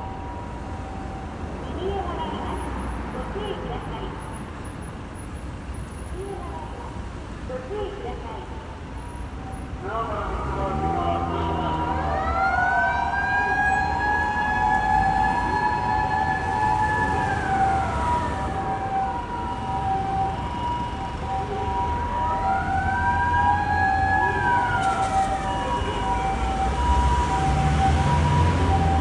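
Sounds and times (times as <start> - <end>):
two-tone ambulance siren: 0.0 - 2.8, 9.4 - 29.0
low traffic rumble: 0.0 - 29.0
police car wailing siren: 9.4 - 29.0.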